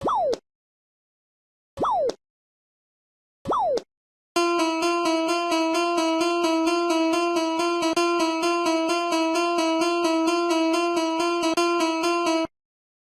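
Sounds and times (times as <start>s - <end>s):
level-crossing alarm bell: 4.4s - 12.5s.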